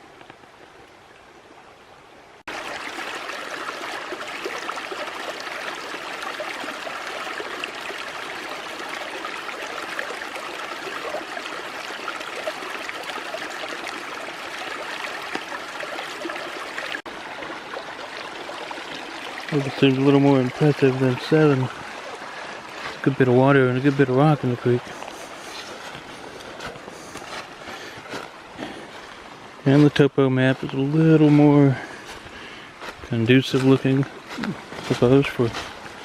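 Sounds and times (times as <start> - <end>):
creek water rushing over rocks: 0.0 - 36.0.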